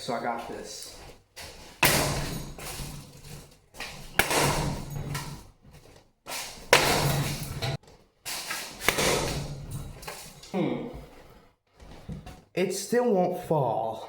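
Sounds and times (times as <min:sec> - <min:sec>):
ceiling fan banging: 0:00.0 - 0:05.5, 0:06.3 - 0:10.4
ceiling fan rattling: 0:00.0 - 0:10.4.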